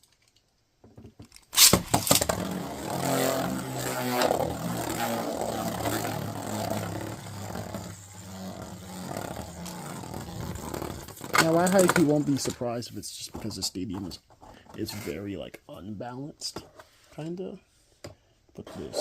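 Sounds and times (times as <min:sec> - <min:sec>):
spinning top launch rip: 0:01.5 - 0:12.6
top scraping stadium floor: 0:01.6 - 0:12.6.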